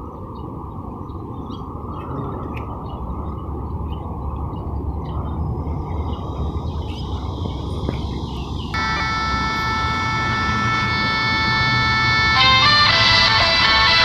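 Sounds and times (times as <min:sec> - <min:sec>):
low outdoor rumble: 0:00.0 - 0:14.0
music with reedy held notes: 0:08.8 - 0:14.0.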